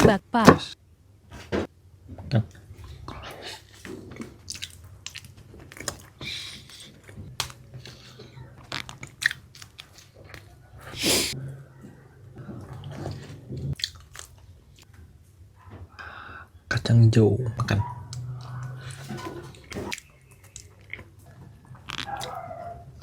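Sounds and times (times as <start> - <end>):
chewing bread: 2.5 - 15.0, 17.6 - 23.0
wet mouth clicks and smacks: 4.5 - 6.1, 13.8 - 14.4.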